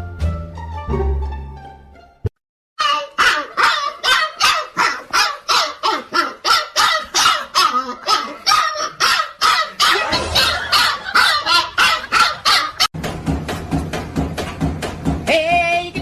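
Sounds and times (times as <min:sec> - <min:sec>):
dog barking rapidly: 0:02.8 - 0:12.9.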